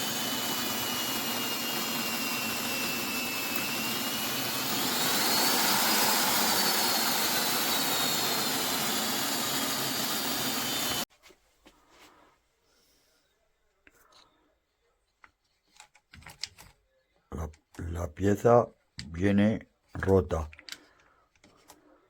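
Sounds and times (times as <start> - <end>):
electric hammer drill whine: 0.0 - 11.1.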